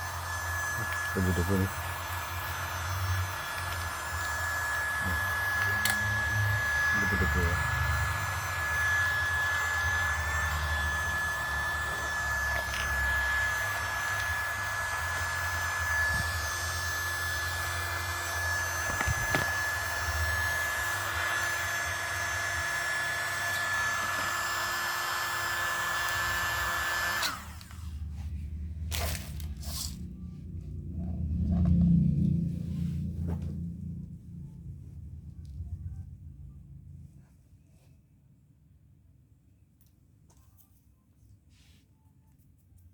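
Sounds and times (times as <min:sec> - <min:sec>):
mini vacuum cleaner whining: 0:00.0 - 0:27.8.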